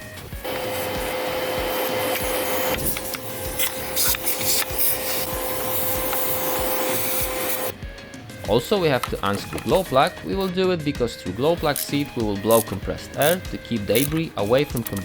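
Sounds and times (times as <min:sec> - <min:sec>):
vacuum cleaner whining: 0:00.0 - 0:10.5
debris clicking in hose: 0:00.4 - 0:07.7, 0:11.5 - 0:15.0.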